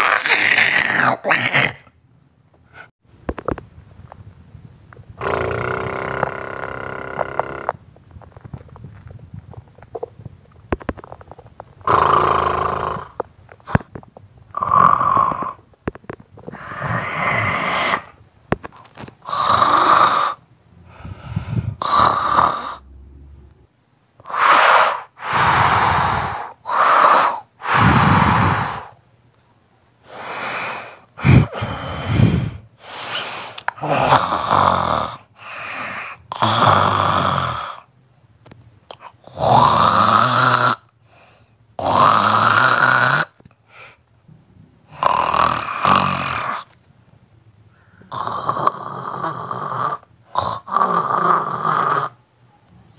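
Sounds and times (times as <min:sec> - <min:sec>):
person snoring loudly: 0:05.2 - 0:07.8, 0:11.8 - 0:13.8, 0:14.5 - 0:15.6, 0:16.5 - 0:18.2, 0:19.2 - 0:23.4, 0:24.2 - 0:29.0, 0:30.1 - 0:37.9, 0:39.2 - 0:40.9, 0:41.8 - 0:43.4, 0:44.9 - 0:46.7, 0:48.1 - 0:52.2.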